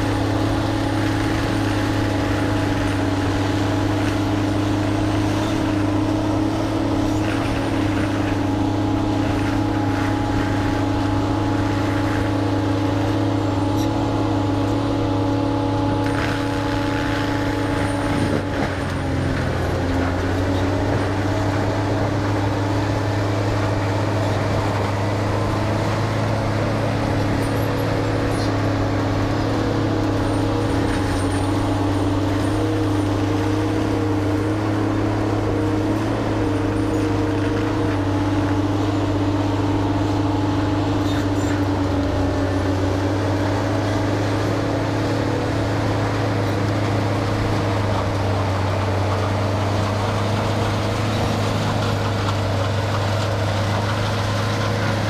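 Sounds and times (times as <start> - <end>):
heavy machine engine running: 0.0 - 55.0.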